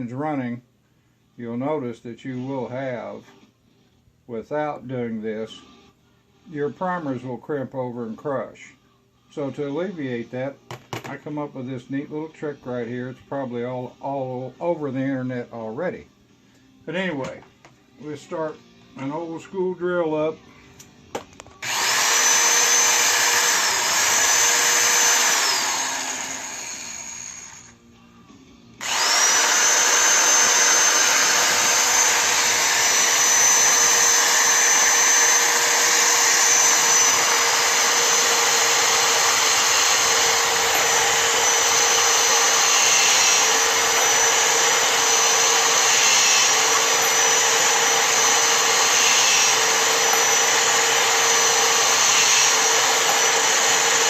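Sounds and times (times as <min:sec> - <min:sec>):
electric drill whining: 0:21.6 - 0:27.8, 0:28.8 - 0:54.0.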